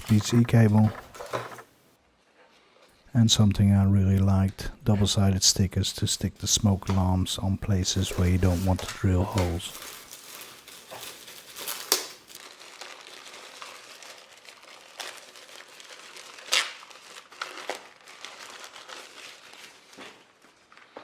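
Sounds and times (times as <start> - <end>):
packaging crinkling and rustling: 0.0 - 1.8, 7.8 - 21.0.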